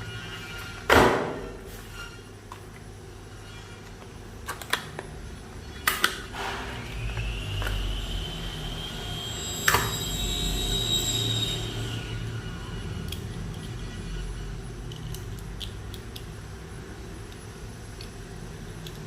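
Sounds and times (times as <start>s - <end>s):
small motor whining: 6.8s - 14.5s.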